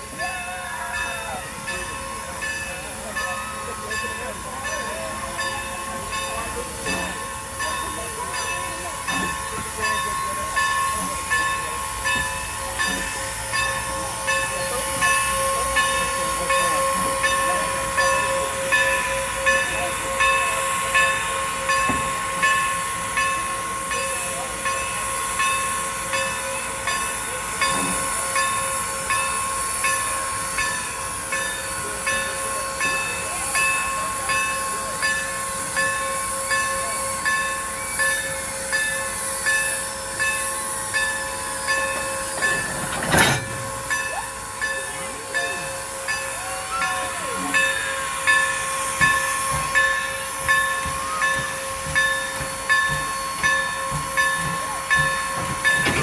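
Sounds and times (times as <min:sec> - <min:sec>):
steam hissing: 0:00.0 - 0:55.8
locomotive bell ringing: 0:00.0 - 0:56.0.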